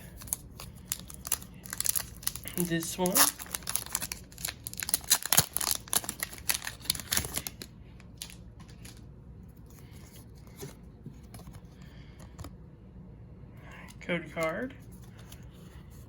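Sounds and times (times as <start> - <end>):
foil wrapper crinkling and tearing: 0.0 - 9.1
cards rustling and clicking: 0.0 - 12.6.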